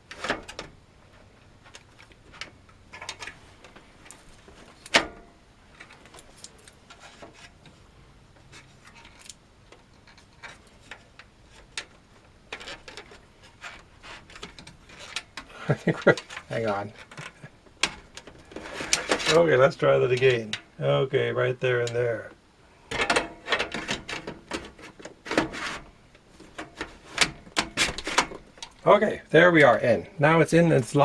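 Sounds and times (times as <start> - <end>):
optical drive clicking and scraping in bay: 8.4 - 20.8, 22.9 - 28.9.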